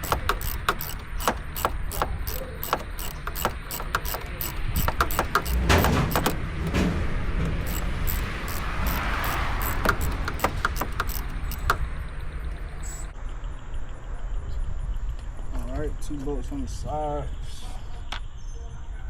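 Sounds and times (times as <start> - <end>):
socket wrench clicking: 0.0 - 6.9, 7.6 - 13.1.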